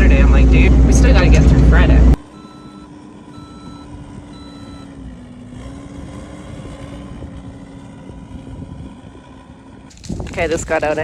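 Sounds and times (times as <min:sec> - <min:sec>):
engine running: 0:00.0 - 0:11.0
reversing alarm beeps: 0:02.3 - 0:05.0.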